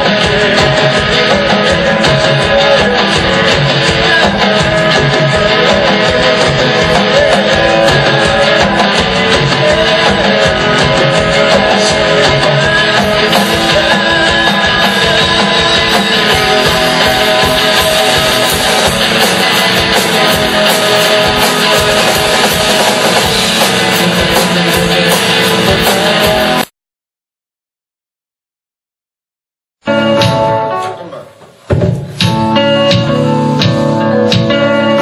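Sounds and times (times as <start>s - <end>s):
distorted electric guitar: 0.0s - 26.7s, 29.8s - 35.0s
fast dense drumming: 0.0s - 26.7s.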